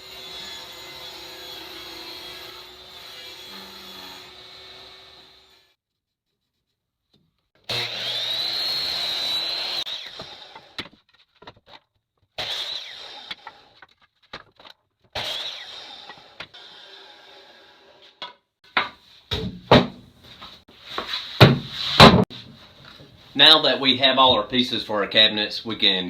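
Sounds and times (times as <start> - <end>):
power saw cutting wood: 0.0 - 5.8, 7.7 - 11.0, 12.4 - 13.8, 15.1 - 18.2.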